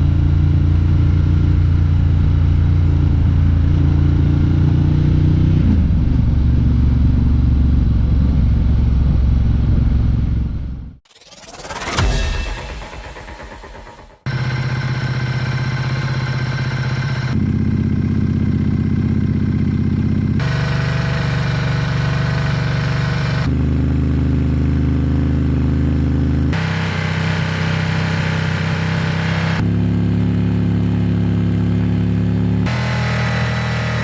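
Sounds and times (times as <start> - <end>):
motorcycle engine idling: 13.7 - 29.6.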